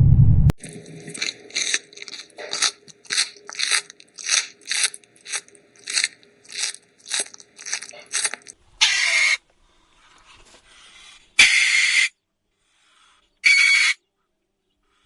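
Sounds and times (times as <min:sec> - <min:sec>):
rhythmic crunching: 0:00.6 - 0:08.6.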